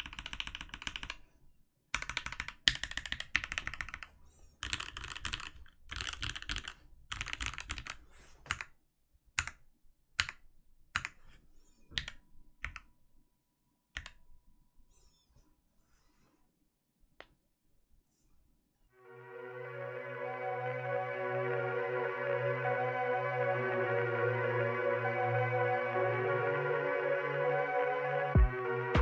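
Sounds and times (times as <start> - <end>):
mechanical keyboard typing: 0.0 - 1.2, 1.9 - 8.7, 9.4 - 9.6.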